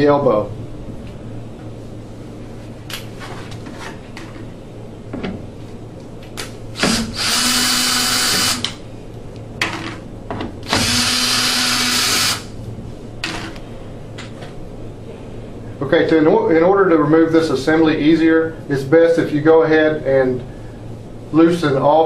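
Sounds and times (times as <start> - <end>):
power drill whining: 6.8 - 8.7, 10.7 - 12.5.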